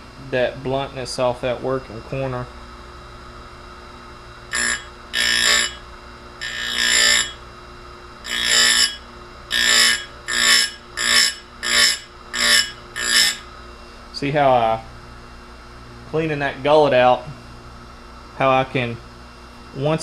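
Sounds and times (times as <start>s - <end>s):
grinder motor humming: 4.2s - 14.8s
grinding wheel on saw chain: 4.5s - 5.8s, 6.4s - 7.4s, 8.2s - 13.5s.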